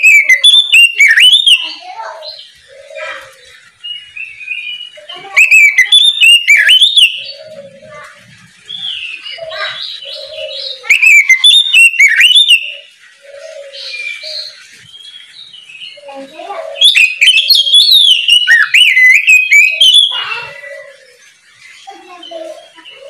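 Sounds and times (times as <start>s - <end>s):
magpie-robin whistled song: 0.0s - 3.2s, 3.8s - 7.6s, 8.7s - 16.1s, 16.7s - 23.0s
soft bird warbling: 0.0s - 3.7s, 5.0s - 14.6s.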